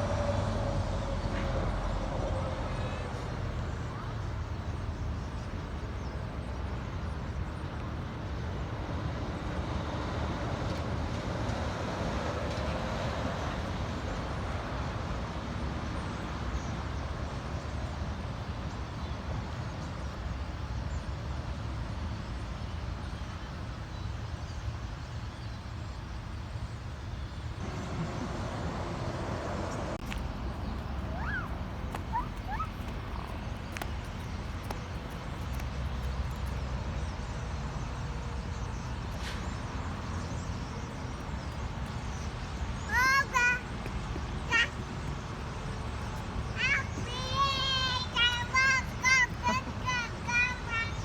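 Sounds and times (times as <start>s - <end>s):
road traffic rumble: 0.0s - 51.0s.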